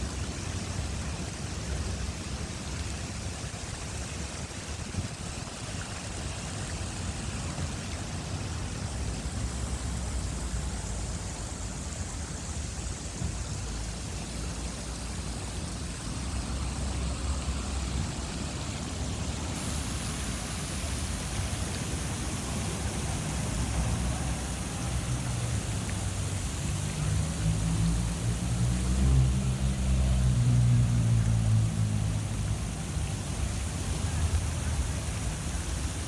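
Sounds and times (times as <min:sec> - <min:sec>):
fountain water splashing: 0:00.0 - 0:36.0
low uneven rumble: 0:13.3 - 0:36.0.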